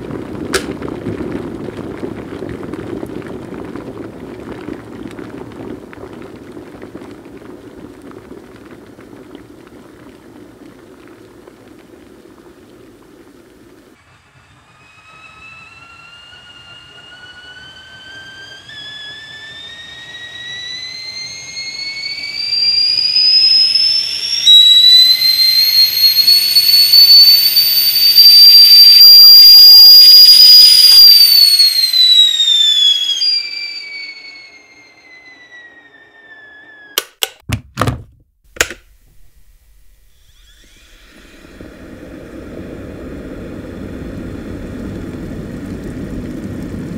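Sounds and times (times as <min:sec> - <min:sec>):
kettle whistling: 0:13.9 - 0:37.5, 0:38.6 - 0:46.9
sharp clicks: 0:37.0 - 0:37.5, 0:38.5 - 0:39.0.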